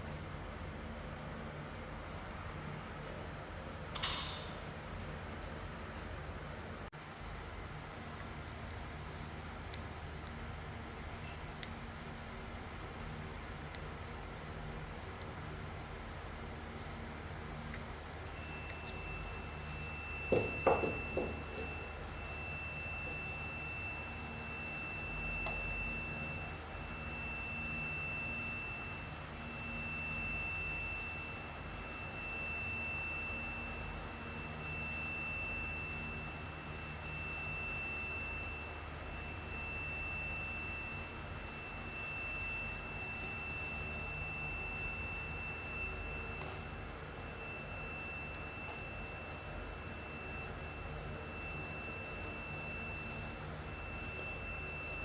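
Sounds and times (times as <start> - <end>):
high-pitched electronic tone: 18.4 - 55.0.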